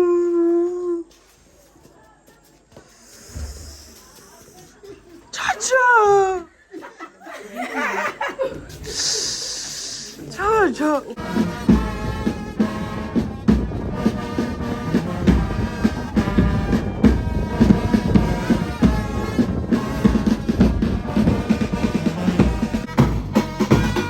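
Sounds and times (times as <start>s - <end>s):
background music with drum beat: 11.2s - 24.0s
deep bass drum: 11.2s - 24.0s.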